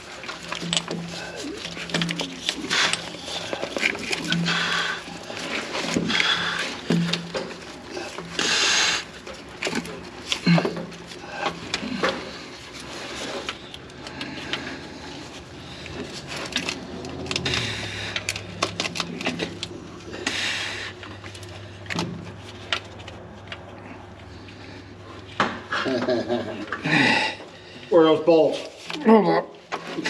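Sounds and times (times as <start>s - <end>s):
metal clicks and scrapes: 0.0s - 20.1s.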